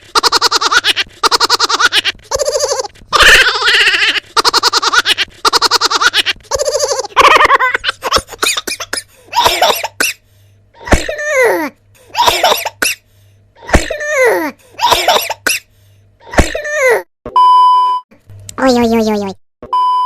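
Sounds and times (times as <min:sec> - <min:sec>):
person coughing and laughing: 0:07.3 - 0:10.2, 0:10.8 - 0:13.0, 0:13.6 - 0:17.0
short steady beep: 0:17.3 - 0:18.0, 0:19.7 - 0:20.0.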